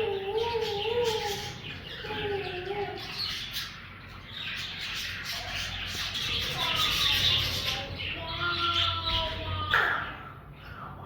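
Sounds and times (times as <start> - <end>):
budgerigars chirping: 0.3 - 8.9.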